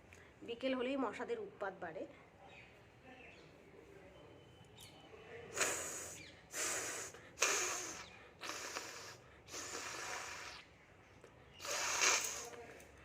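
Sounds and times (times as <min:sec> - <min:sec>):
person blowing nose: 0:05.6 - 0:10.7, 0:11.6 - 0:12.6.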